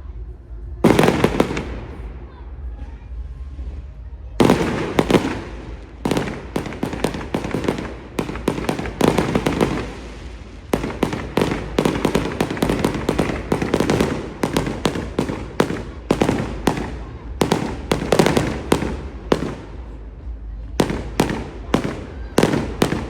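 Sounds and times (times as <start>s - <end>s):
low rumble: 0.0s - 23.0s
fireworks cracking and crackling: 0.8s - 2.3s, 4.4s - 23.0s.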